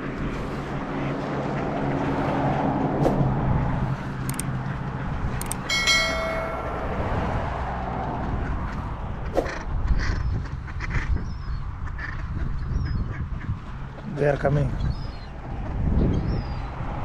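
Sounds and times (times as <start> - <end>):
sharp clicks: 4.2 - 4.5, 5.4 - 5.7
short high-pitched tone: 5.7 - 7.4.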